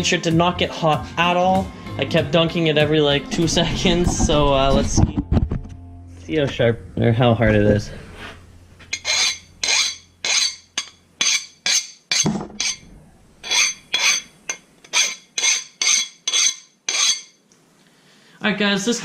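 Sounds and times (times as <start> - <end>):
file scraping steel blade: 8.1 - 17.4.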